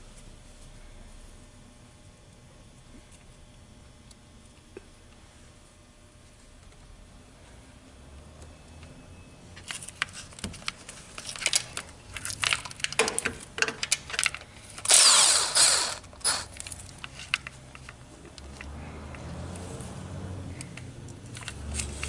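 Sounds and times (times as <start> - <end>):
cordless ratchet running: 14.8 - 16.7.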